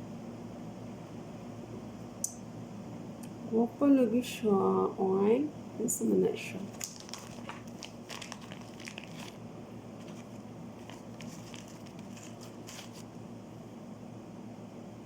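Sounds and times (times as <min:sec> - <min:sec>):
packaging crinkling: 0:06.6 - 0:13.1.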